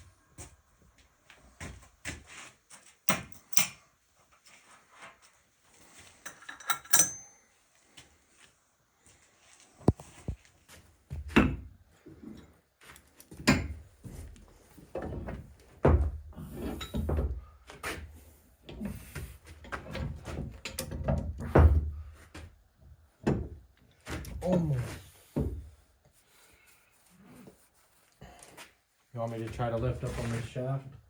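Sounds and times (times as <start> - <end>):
metal parts sliding and rubbing: 5.8 - 7.2
metal parts knocking and thudding: 6.3 - 7.3.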